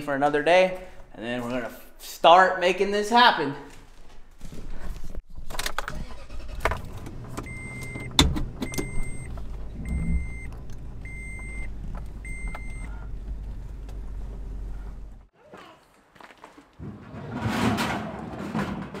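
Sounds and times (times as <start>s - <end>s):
vehicle engine rumbling: 5.3s - 15.3s
electronic beep: 8.7s - 10.5s, 11.1s - 12.9s.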